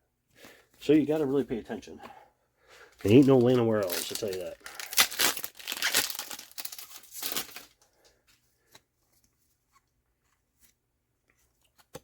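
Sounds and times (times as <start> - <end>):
wrapper crinkling: 3.0 - 7.8.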